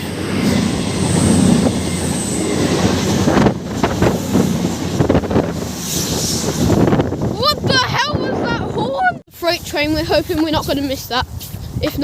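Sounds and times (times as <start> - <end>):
high wheel squeal: 0.0 - 3.4
train passing at speed: 0.0 - 9.7.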